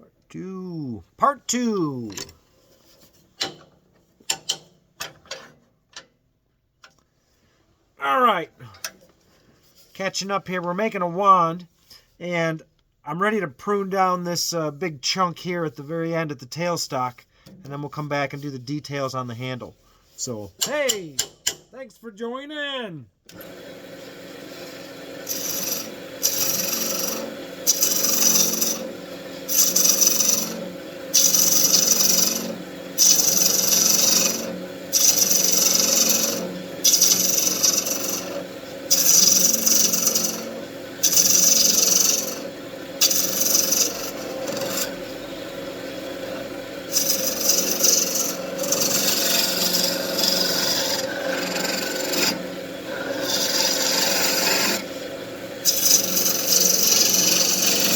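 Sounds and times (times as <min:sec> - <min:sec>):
wood lathe motor hum: 0:23.3 - 0:57.9
turning tool scraping wood: 0:24.0 - 0:57.9.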